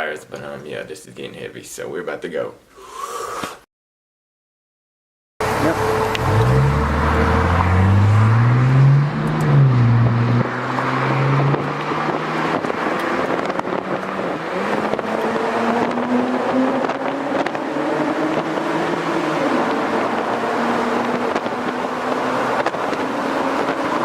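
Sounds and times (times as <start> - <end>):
car engine accelerating hard: 5.4 - 24.0.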